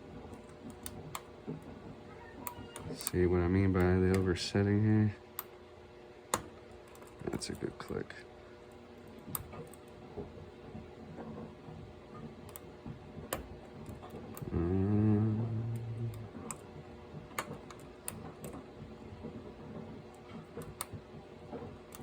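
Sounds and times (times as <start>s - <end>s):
low hum: 14.3s - 18.2s.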